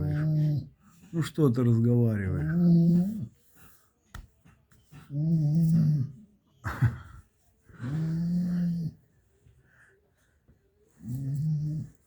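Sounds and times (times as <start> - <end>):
badger snoring: 7.8 - 9.0, 11.1 - 12.0.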